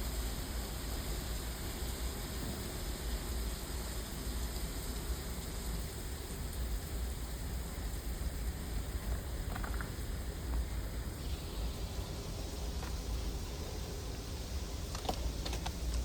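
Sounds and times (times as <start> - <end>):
water rushing through ice: 0.0 - 16.0.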